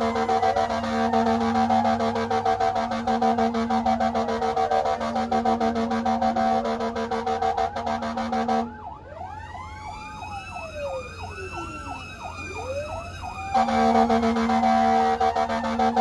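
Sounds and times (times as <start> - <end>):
pulsing electronic horn tone: 0.0 - 8.8, 13.5 - 16.0
siren wailing and yelping: 0.0 - 16.0.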